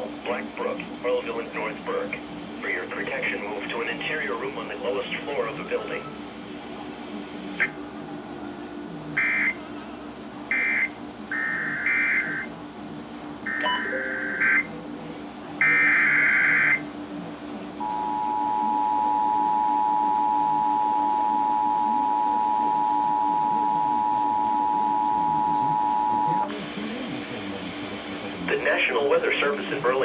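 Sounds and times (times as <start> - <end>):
two-tone attention signal: 9.2 - 9.6, 10.5 - 12.5, 13.5 - 14.7, 15.6 - 16.9, 17.8 - 26.5.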